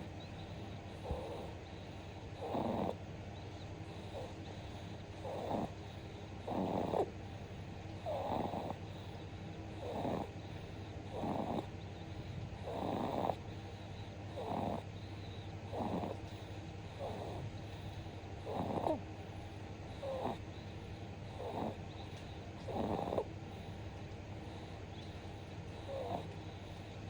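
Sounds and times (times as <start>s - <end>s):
baby snoring: 0.9s - 1.6s, 2.4s - 3.0s, 3.9s - 4.4s, 5.1s - 7.2s, 8.0s - 11.7s, 12.6s - 13.5s, 14.3s - 19.0s, 19.9s - 20.7s, 21.3s - 23.8s, 25.7s - 26.8s.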